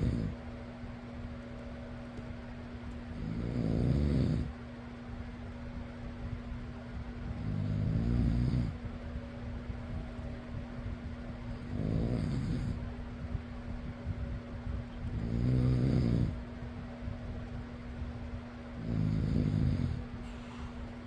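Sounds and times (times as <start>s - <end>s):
person snoring: 0.0s - 0.4s, 3.2s - 4.5s, 11.7s - 12.8s, 15.2s - 16.4s, 18.8s - 20.0s
electric fan humming: 0.0s - 21.0s.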